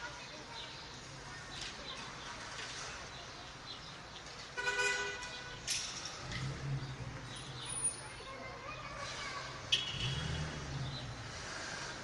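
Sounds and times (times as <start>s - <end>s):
city traffic noise: 0.0s - 12.0s
car horn toot: 4.6s - 5.4s.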